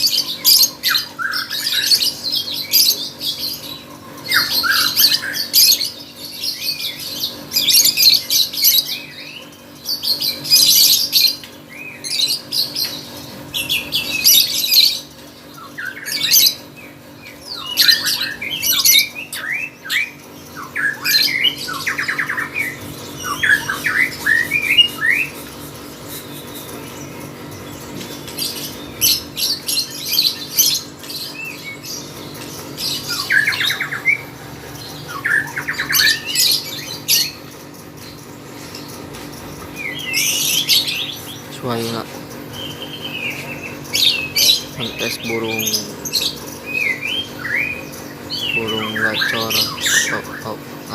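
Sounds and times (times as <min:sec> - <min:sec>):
lovebird shrill chattering: 0:20.8 - 0:50.9.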